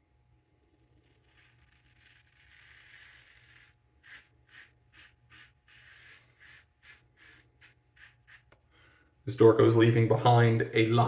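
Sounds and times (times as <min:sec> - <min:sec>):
razor scraping stubble: 0:00.8 - 0:08.6.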